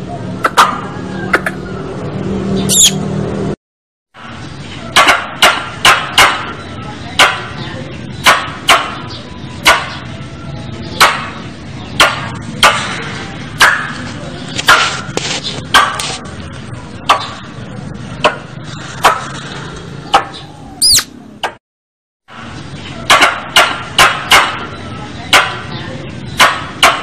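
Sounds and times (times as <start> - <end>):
short curving whistle: 2.7 - 3.0, 20.8 - 21.1
squirrel chipping: 2.7 - 3.0, 20.2 - 21.2.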